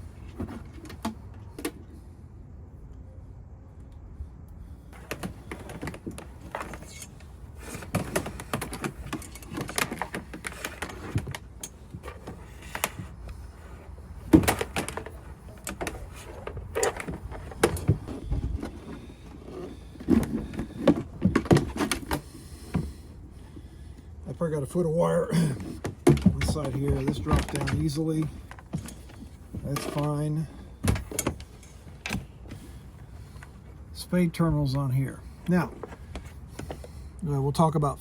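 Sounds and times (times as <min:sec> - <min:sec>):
wires clicking and rustling: 0:05.0 - 0:22.2.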